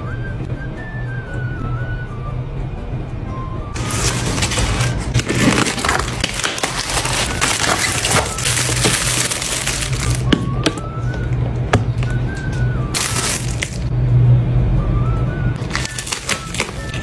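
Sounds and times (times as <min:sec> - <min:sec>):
background music: 0:00.0 - 0:17.0
crinkling and crunching: 0:03.8 - 0:11.0, 0:11.9 - 0:13.9, 0:15.6 - 0:17.0.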